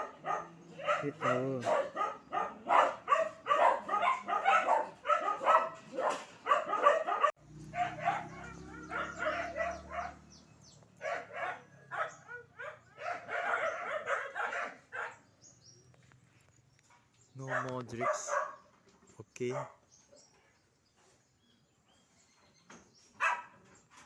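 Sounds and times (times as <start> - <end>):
dog barking: 0.0 - 10.4, 11.0 - 15.3, 17.4 - 18.7, 23.2 - 23.7.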